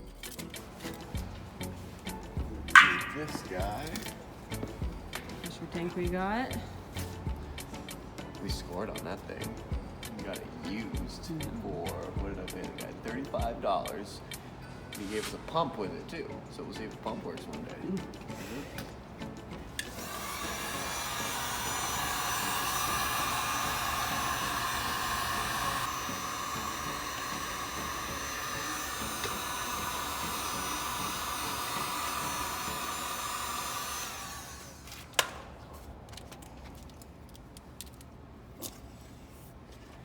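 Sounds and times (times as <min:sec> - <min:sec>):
electric blower motor hissing: 0:00.5 - 0:08.7, 0:19.8 - 0:35.2.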